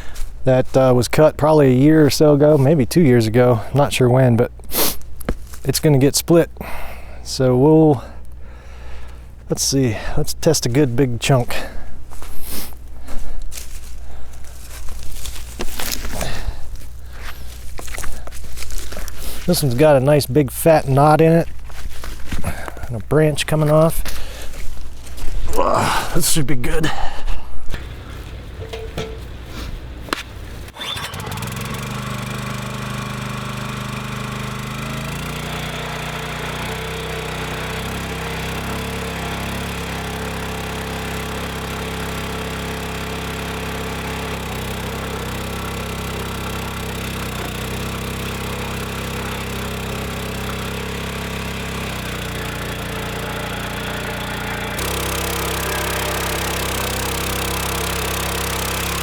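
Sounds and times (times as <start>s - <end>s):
small gas engine running: 0.0s - 26.3s, 27.7s - 59.0s.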